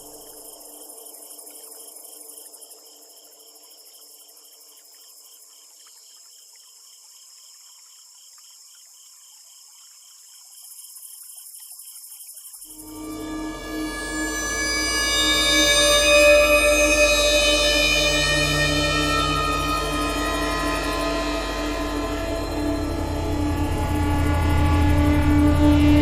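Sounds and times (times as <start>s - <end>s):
crickets chirping: 0.0s - 26.0s
high insect hiss: 0.0s - 26.0s.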